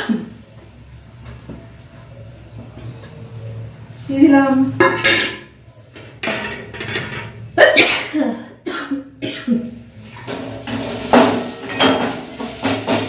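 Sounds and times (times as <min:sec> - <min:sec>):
woman coughing: 0:07.6 - 0:09.7.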